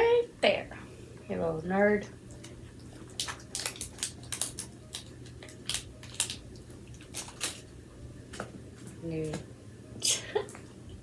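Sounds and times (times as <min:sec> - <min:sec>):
dog crunching a treat: 0:02.8 - 0:07.7.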